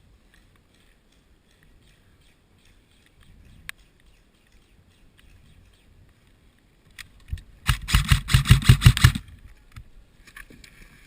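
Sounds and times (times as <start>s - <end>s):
airsoft rifle shots: 7.6s - 9.3s.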